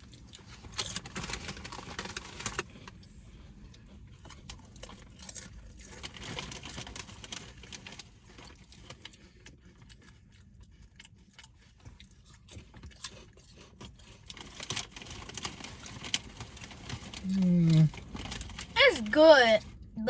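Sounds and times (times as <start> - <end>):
chip bag rustling: 0.6 - 2.8, 5.3 - 8.6, 14.3 - 19.6
potato chips crunching: 4.3 - 9.2, 11.3 - 19.3.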